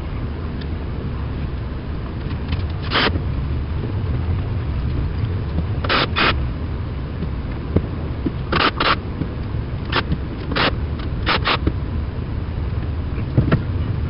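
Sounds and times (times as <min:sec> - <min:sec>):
steady low rumble: 0:00.0 - 0:14.0
short sharp noisy bursts: 0:02.8 - 0:03.2, 0:05.8 - 0:06.4, 0:08.5 - 0:09.1, 0:09.9 - 0:11.7.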